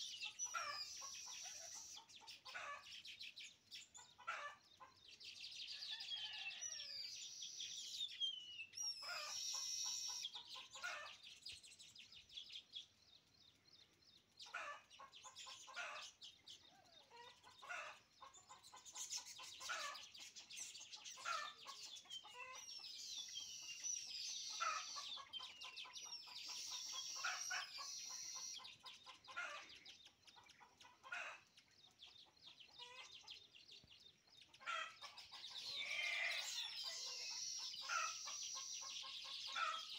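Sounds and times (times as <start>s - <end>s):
birds wheezy gliding whistles: 0.0s - 2.2s, 6.1s - 11.0s, 18.9s - 29.8s, 34.9s - 39.9s
birds buzzy chattering: 0.0s - 5.0s, 8.8s - 39.9s.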